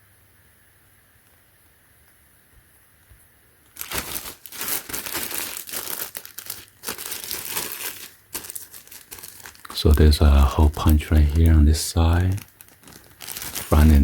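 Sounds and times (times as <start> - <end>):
plastic bag crinkling: 3.6 - 14.0.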